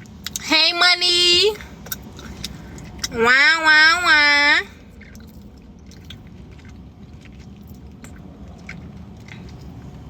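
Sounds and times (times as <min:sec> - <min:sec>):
open-mouth chewing smacks: 0:00.0 - 0:00.4, 0:01.6 - 0:03.2, 0:04.7 - 0:10.0
low steady hum: 0:00.0 - 0:10.0.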